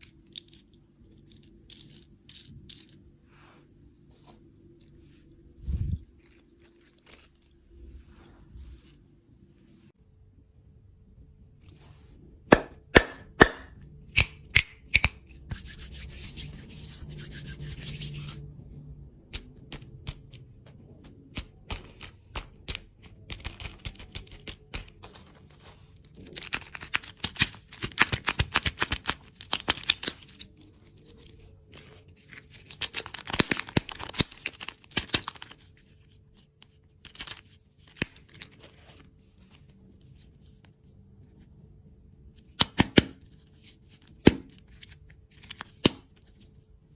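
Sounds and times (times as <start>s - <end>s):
crackling and tearing wrapper: 6.1s - 7.7s, 26.1s - 36.1s.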